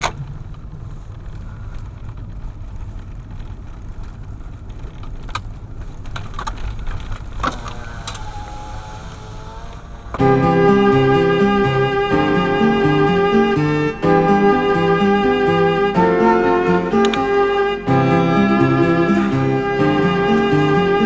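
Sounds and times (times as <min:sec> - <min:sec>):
string music: 0:10.2 - 0:21.0.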